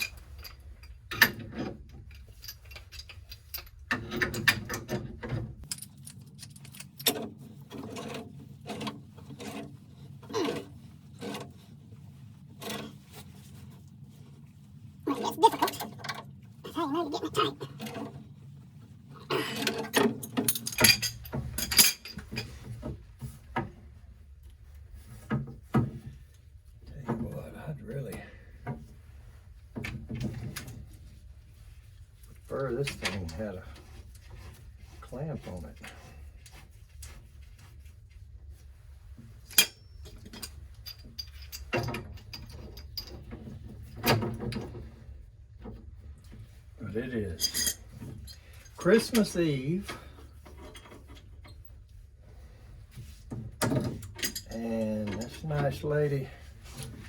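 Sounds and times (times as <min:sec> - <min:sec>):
tools clicking on metal fittings: 0:00.0 - 0:09.6, 0:47.4 - 0:49.3.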